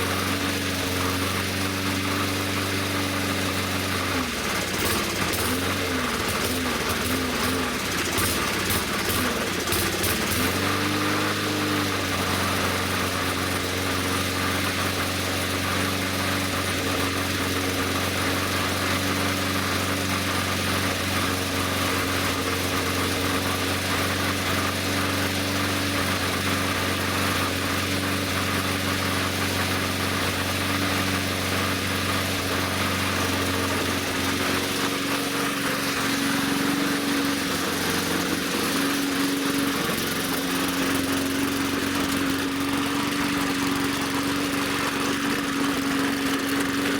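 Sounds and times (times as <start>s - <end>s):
small gasoline engine running rough: 0.0s - 46.9s.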